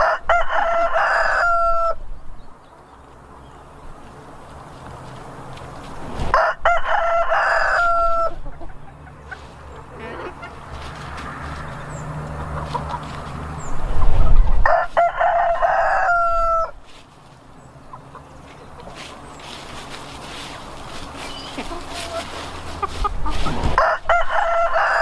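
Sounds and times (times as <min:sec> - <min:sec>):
rooster crowing: 0:00.0 - 0:02.0, 0:06.3 - 0:08.4, 0:14.6 - 0:16.8, 0:21.2 - 0:25.0.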